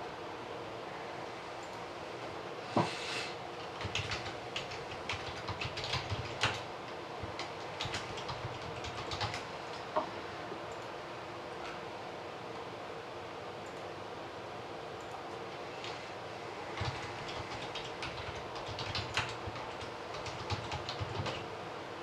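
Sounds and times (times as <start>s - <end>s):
steady background hiss: 0.0s - 22.0s
keyboard typing clicks: 3.6s - 6.6s, 7.4s - 9.5s, 16.8s - 21.4s.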